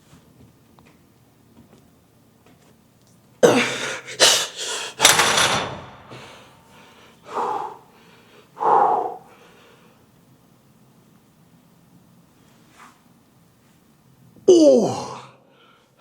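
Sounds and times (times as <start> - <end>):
man exhaling forcefully: 7.3 - 7.9, 8.6 - 9.4
man groaning: 14.5 - 15.4.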